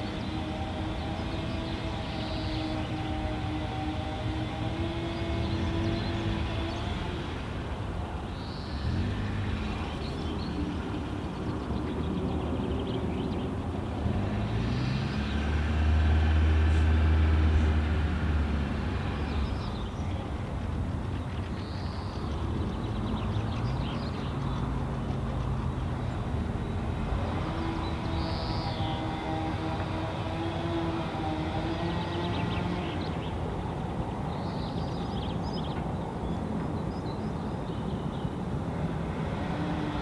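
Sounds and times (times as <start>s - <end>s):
low engine-like rumble: 0.0s - 31.2s.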